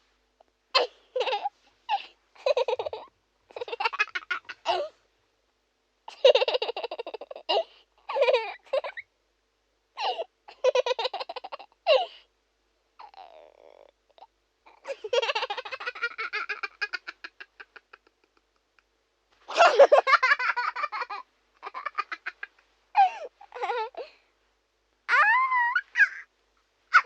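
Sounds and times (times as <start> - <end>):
cartoon baby laughing: 14.8 - 18.4, 25.1 - 26.3.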